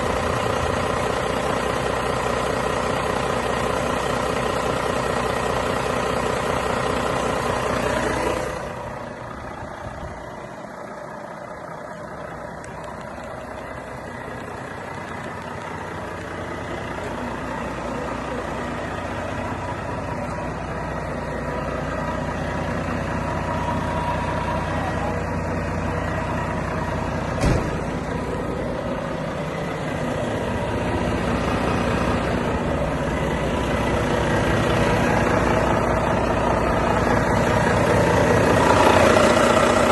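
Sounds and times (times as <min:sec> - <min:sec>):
diesel truck engine idling: 0:00.0 - 0:39.9.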